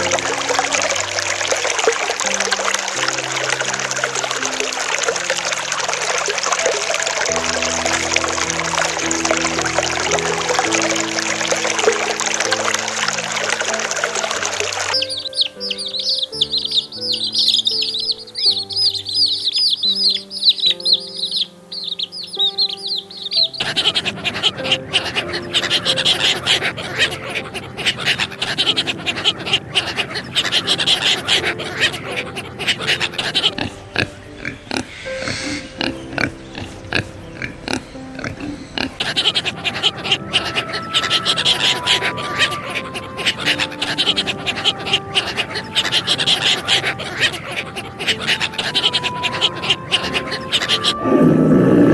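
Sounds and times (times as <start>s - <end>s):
slow held-note music: 0.0s - 51.9s
small birds chirping: 0.0s - 51.9s
pigs grunting: 23.4s - 51.9s.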